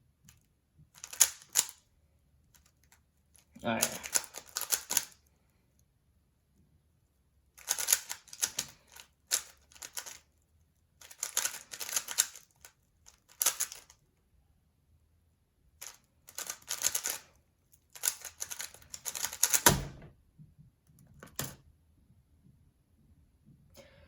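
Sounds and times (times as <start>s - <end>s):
plastic puzzle cube clicking: 0.3s - 1.8s, 2.5s - 5.2s, 7.6s - 10.3s, 11.0s - 14.0s, 15.8s - 17.3s, 17.9s - 19.7s.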